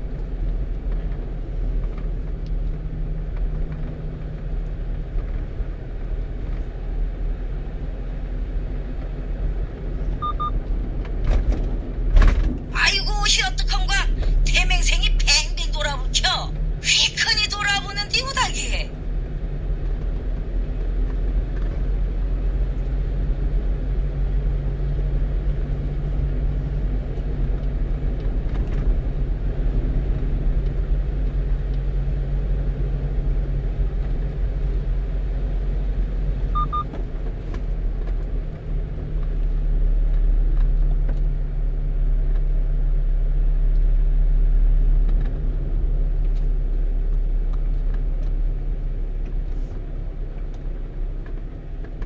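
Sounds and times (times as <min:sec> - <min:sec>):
truck engine and tyre drone: 0:00.0 - 0:52.0
high double beep: 0:10.2 - 0:10.5.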